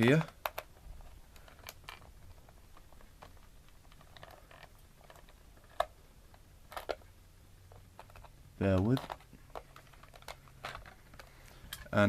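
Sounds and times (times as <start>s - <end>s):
screwdriver ticks and creaks: 0.1s - 7.0s.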